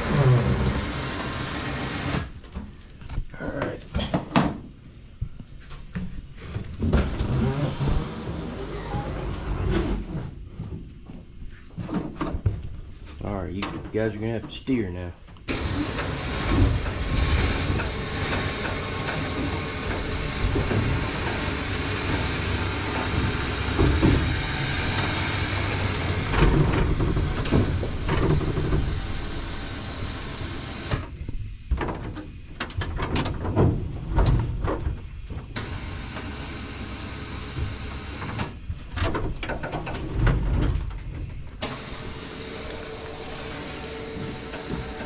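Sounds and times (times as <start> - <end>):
knocks and clunks: 9.7 - 14.6, 15.2 - 36.4, 37.3 - 45.0
race car rolling rumble: 15.6 - 31.0.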